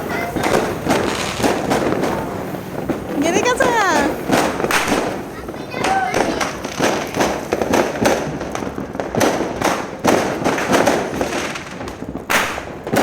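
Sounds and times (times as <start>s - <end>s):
fireworks bangs and pops: 0.0s - 13.0s
loud firework bang: 0.0s - 13.0s.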